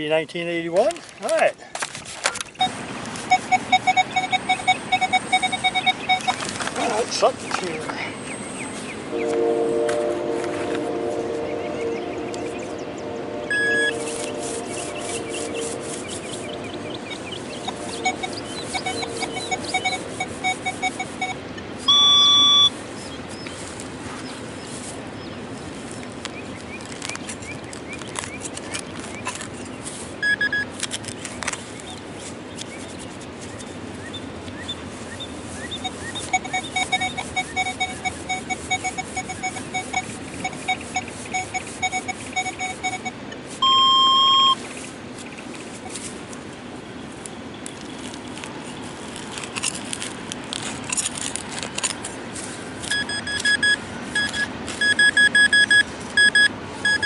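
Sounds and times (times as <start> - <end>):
digging in soil: 0.8 - 11.5, 13.5 - 22.6, 45.2 - 55.0
metal detector beeps: 2.3 - 7.0, 13.5 - 22.8, 30.2 - 30.7, 35.6 - 44.6, 52.8 - 57.0
metal detector chirps: 2.3 - 8.9, 13.5 - 22.8, 28.2 - 30.8, 35.6 - 44.6, 52.8 - 57.0.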